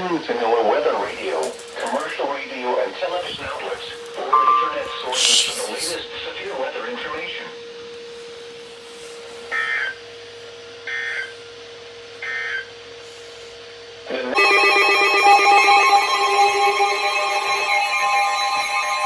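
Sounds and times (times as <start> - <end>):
harsh attention tone: 5.0 - 6.0.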